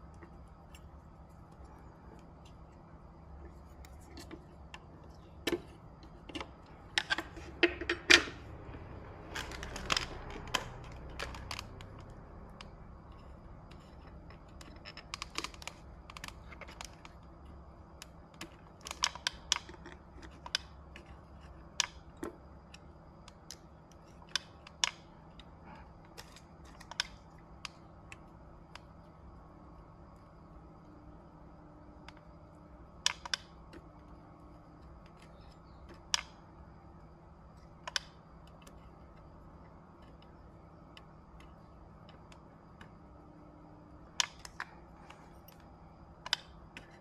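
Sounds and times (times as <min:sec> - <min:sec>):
faint steady hum: 0:00.0 - 0:47.0
small tools clicking and tapping: 0:03.4 - 0:17.3, 0:18.0 - 0:28.9, 0:37.6 - 0:43.0.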